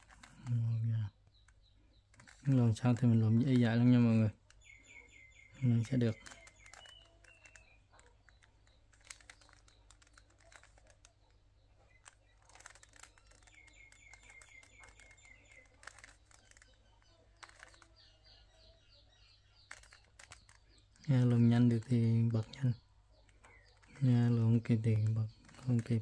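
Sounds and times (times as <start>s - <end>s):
puzzle cube clicking as twisted: 0.0s - 0.6s, 1.3s - 4.7s, 5.8s - 11.2s, 12.0s - 18.0s, 19.6s - 21.3s, 25.0s - 26.0s
bird chirping: 0.0s - 26.0s.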